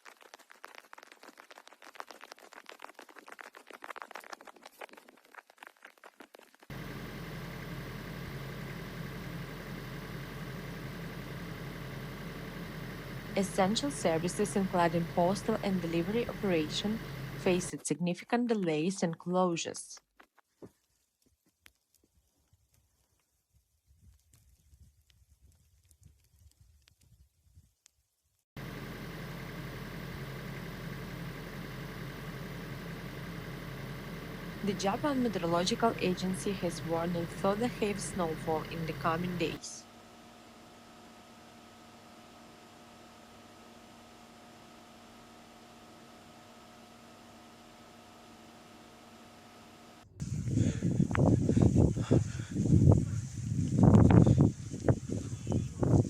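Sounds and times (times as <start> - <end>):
steady engine drone: 6.7 - 17.8, 28.6 - 56.0.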